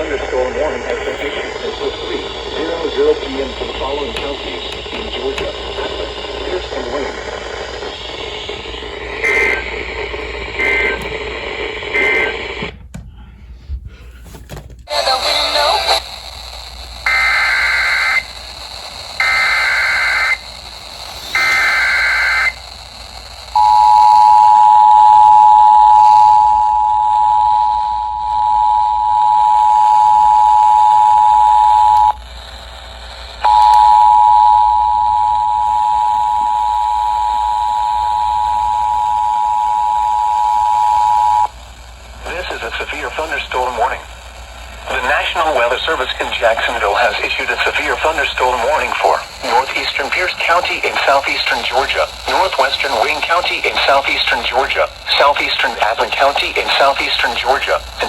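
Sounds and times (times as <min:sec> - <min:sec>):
warbling data bursts: 0:00.0 - 0:12.6, 0:42.2 - 0:58.0.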